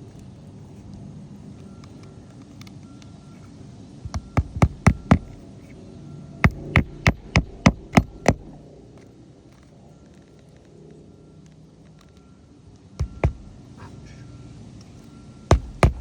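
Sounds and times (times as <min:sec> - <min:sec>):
hammer driving nails into shingles: 0:04.0 - 0:05.4, 0:06.4 - 0:08.6, 0:13.0 - 0:13.6, 0:15.5 - 0:16.0.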